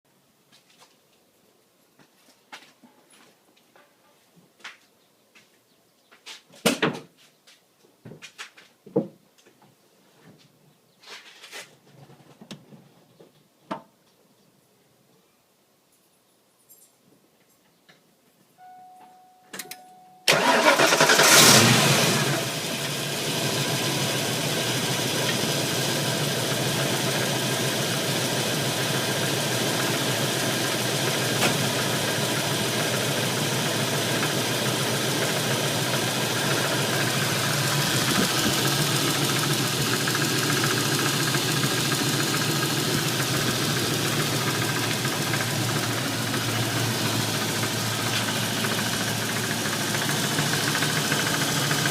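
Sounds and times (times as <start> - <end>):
short beep: 18.6 - 20.3
engine cranking and starting: 20.3 - 22.7
engine idling: 20.3 - 51.9.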